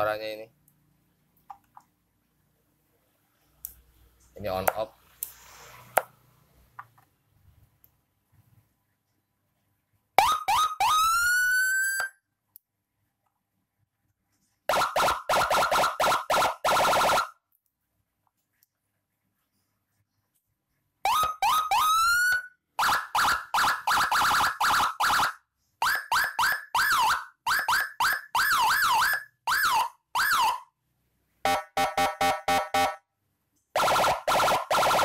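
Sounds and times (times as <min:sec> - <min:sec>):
police siren bursts: 0:10.2 - 0:12.2, 0:14.7 - 0:17.3, 0:21.1 - 0:30.7, 0:31.5 - 0:33.0, 0:33.8 - 0:35.0.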